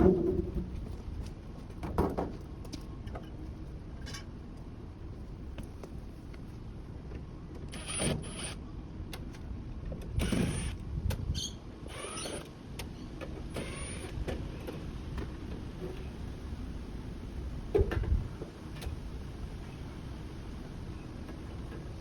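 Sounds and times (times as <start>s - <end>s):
mechanical whirring and scraping: 7.7s - 8.6s, 10.2s - 10.8s, 11.9s - 12.5s, 13.6s - 14.2s.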